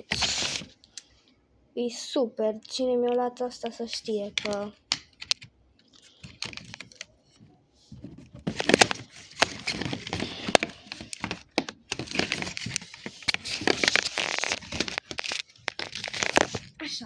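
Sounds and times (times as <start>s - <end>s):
packaging rustling and crinkling: 0.0s - 0.7s, 3.9s - 7.1s, 7.9s - 16.8s
small clicks and knocks: 3.0s - 9.5s.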